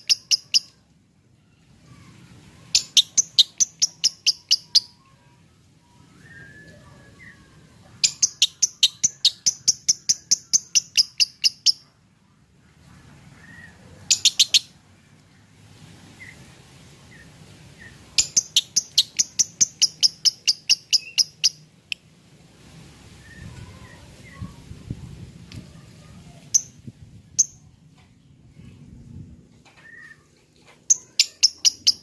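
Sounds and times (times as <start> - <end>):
lovebird chirping rapidly: 0.0 - 0.8, 2.6 - 5.1, 8.0 - 11.9, 13.4 - 14.8, 17.1 - 21.7, 26.4 - 27.6, 30.9 - 32.0.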